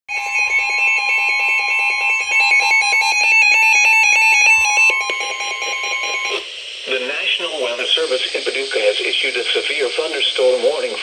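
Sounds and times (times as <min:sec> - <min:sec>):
fast high beeps: 0:00.1 - 0:06.4
electronic two-tone alarm: 0:00.1 - 0:06.5.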